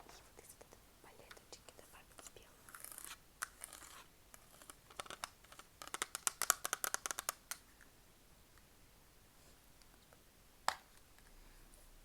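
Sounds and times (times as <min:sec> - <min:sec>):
scratchy rustle: 0:02.2 - 0:04.8.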